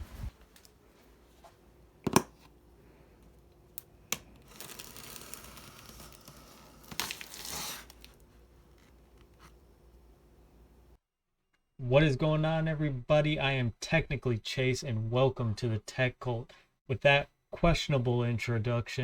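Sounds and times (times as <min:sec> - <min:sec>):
crinkling rustle: 0:04.4 - 0:09.5.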